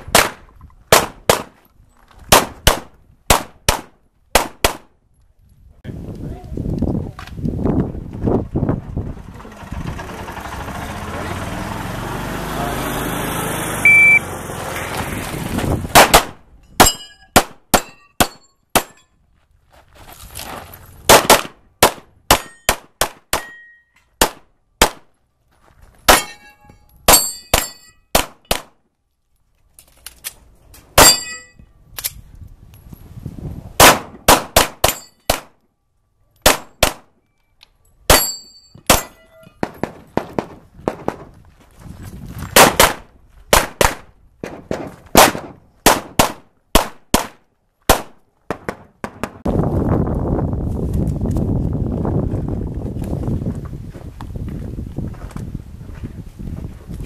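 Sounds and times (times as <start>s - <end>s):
rapid pistol shots: 0.1s - 1.5s, 2.3s - 4.9s, 16.0s - 19.0s, 21.1s - 23.5s, 42.6s - 49.4s
steady rumble: 7.5s - 12.0s
short high beep: 13.8s - 14.2s
metallic ringing of steel targets: 16.6s - 19.2s, 22.3s - 22.7s, 23.4s - 24.0s, 26.1s - 28.6s, 31.0s - 31.8s, 34.8s - 35.4s, 37.3s - 39.8s.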